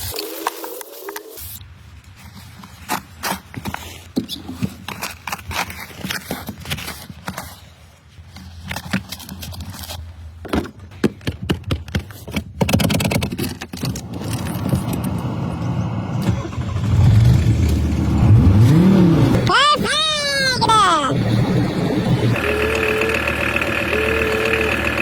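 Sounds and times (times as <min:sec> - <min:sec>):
car engine starting and running: 0:13.9 - 0:19.6, 0:21.0 - 0:25.0.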